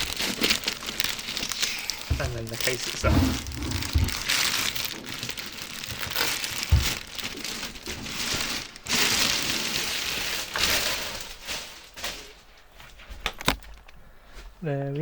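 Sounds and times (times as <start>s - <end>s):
plastic packaging crinkling: 0.0s - 13.9s
low thump: 3.0s - 4.3s.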